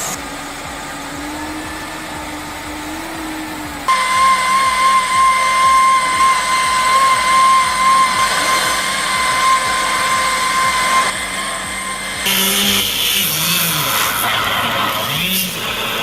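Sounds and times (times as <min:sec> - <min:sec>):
machine hissing with low tones: 0:00.0 - 0:16.0
motorised tool whining: 0:00.0 - 0:16.0.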